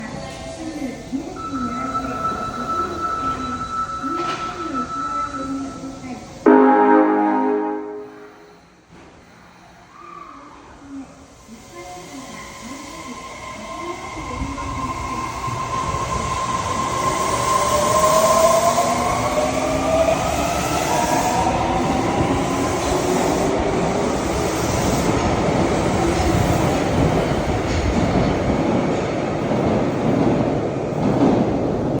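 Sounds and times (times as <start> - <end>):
train rumbling on rails: 11.5 - 32.0.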